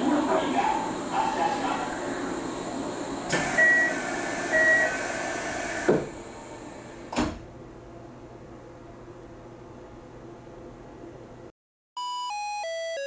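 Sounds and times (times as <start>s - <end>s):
train doors rushing noise: 3.3s - 7.5s.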